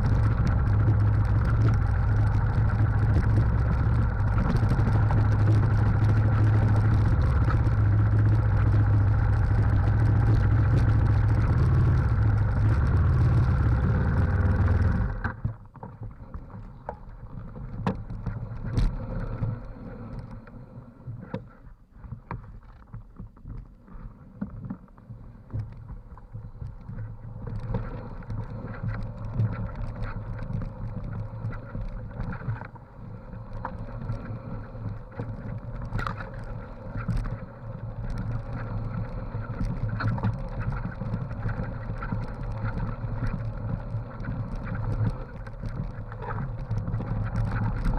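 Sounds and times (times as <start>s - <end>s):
motorcycle engine running: 0.0s - 15.6s, 26.4s - 47.9s
clicks and knocks of rolling bike: 0.0s - 47.9s.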